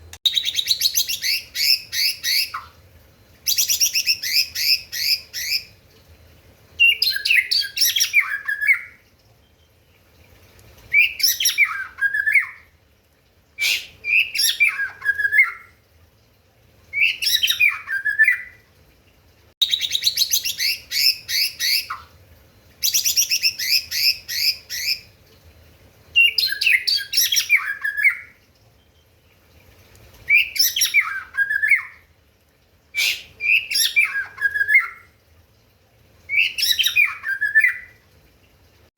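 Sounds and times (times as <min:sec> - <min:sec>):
songbird singing phrases: 0:00.2 - 0:02.7, 0:03.5 - 0:05.8, 0:06.8 - 0:09.9, 0:10.9 - 0:12.7, 0:13.7 - 0:15.7, 0:16.9 - 0:18.6, 0:19.6 - 0:22.1, 0:22.8 - 0:25.1, 0:26.2 - 0:29.2, 0:30.3 - 0:32.1, 0:33.0 - 0:35.1, 0:36.3 - 0:38.0.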